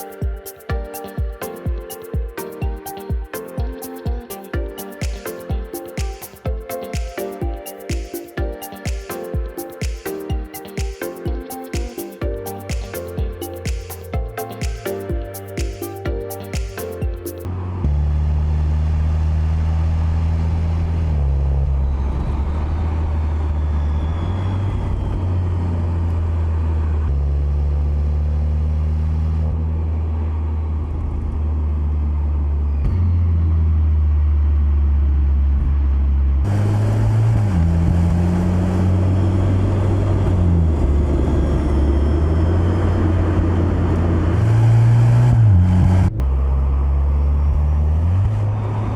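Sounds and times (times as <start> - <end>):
road noise: 5.6 - 48.9
car engine and exhaust drone: 17.4 - 48.9.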